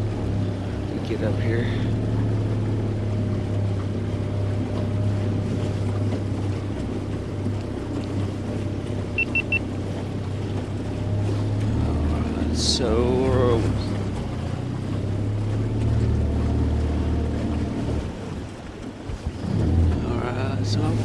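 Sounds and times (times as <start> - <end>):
outboard engine droning: 0.0 - 21.0
wind and water noise: 0.0 - 21.0
high-pitched electronic beeps: 9.2 - 9.6.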